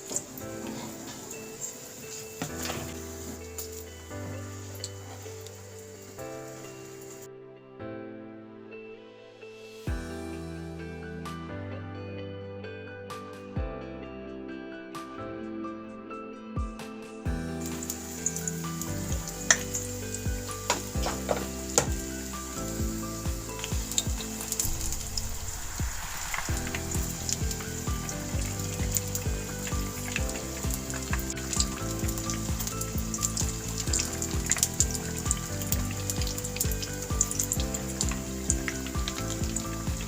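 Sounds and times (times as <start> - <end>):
background music with steady beat: 8.7 - 40.0
chillies deep-frying in oil: 17.7 - 25.5, 26.5 - 40.0.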